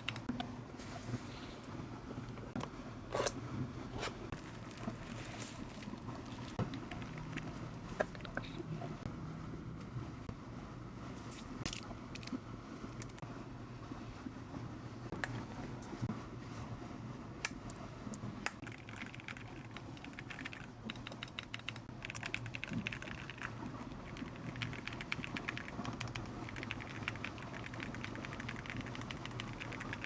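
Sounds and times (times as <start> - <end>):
mechanical keyboard typing: 18.6 - 30.0.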